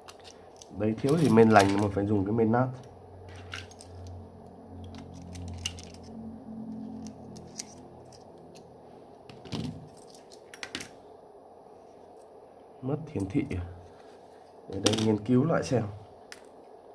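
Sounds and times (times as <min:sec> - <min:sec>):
small parts and tools clicking: 0:00.0 - 0:01.9, 0:04.8 - 0:06.1
low steady hum: 0:00.0 - 0:16.9.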